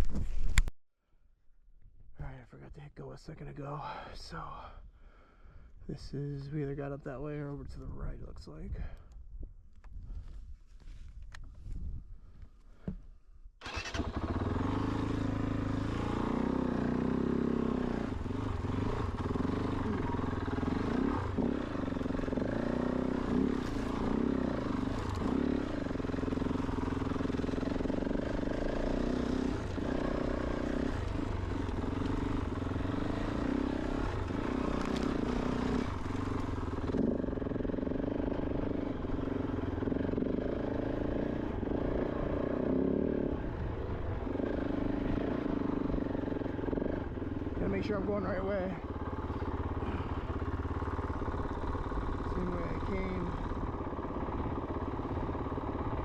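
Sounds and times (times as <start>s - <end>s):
motorcycle engine running at low revs: 13.7s - 56.0s.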